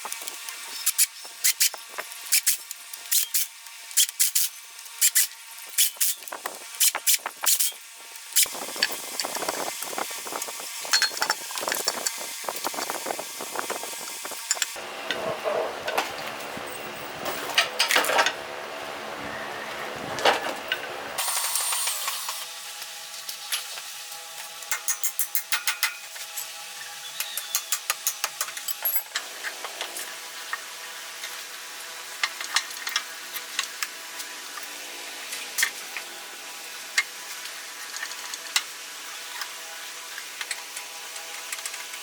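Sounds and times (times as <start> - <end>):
clinks of hard objects: 10.9 - 12.1, 27.2 - 29.2.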